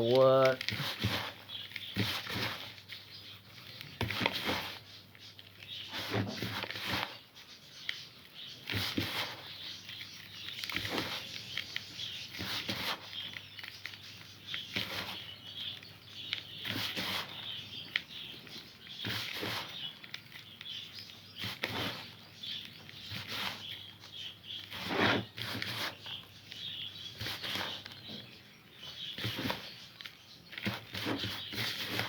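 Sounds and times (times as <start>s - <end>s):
food mixed by hand in bowl: 0.5s - 32.0s.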